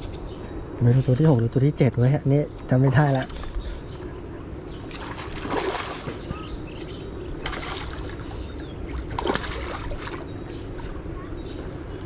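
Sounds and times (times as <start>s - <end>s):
small birds chirping: 0.0s - 12.0s
water splashing: 4.9s - 6.5s, 7.4s - 11.0s.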